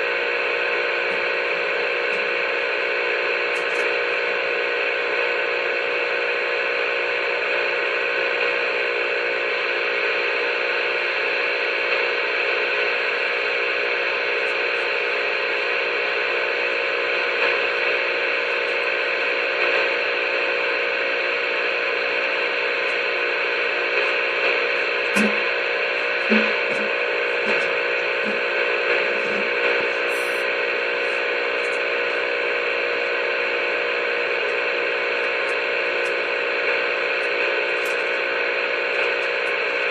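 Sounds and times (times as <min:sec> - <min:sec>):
radio receiver hissing: 0:11.9 - 0:39.9
humming tones: 0:25.0 - 0:31.8.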